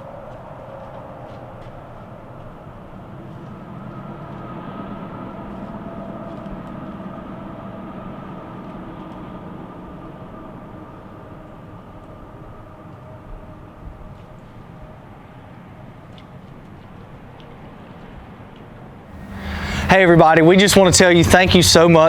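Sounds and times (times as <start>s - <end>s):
distant vehicle rumble: 19.2s - 22.0s
faint whine: 19.2s - 22.0s.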